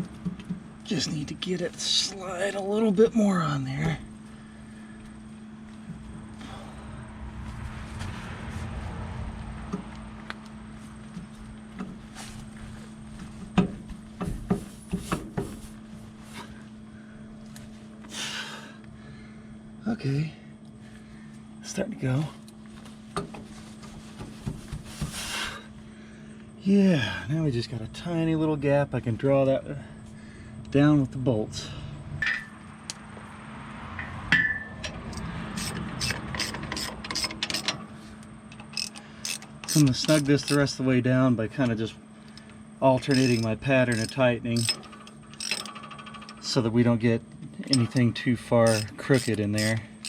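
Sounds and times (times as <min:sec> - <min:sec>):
steady low hum: 0:00.0 - 0:50.0
sharp knocks and clunks: 0:13.3 - 0:15.6, 0:23.2 - 0:25.2
ratchet wrench clicking: 0:34.8 - 0:37.8, 0:38.5 - 0:40.6, 0:43.0 - 0:46.6, 0:47.7 - 0:50.0
metal tools clinking: 0:38.5 - 0:40.7, 0:43.0 - 0:46.6, 0:47.6 - 0:50.0.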